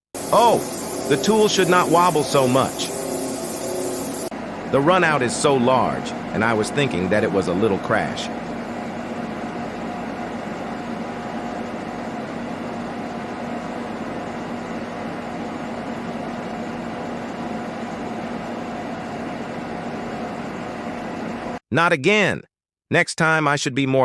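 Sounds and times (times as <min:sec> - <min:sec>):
cnc machine humming: 0:00.0 - 0:04.3.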